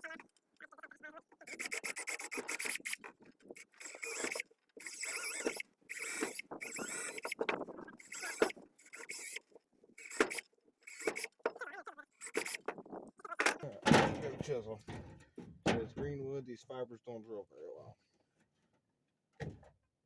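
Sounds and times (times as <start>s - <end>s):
drill boring into wood: 1.4s - 12.8s.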